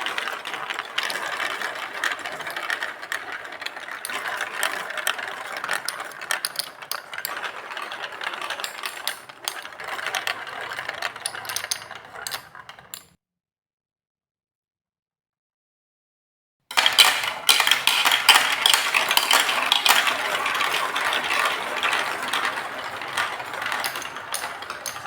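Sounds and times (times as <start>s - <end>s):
marbles rolling on plastic track: 0.0s - 13.2s, 16.7s - 25.0s.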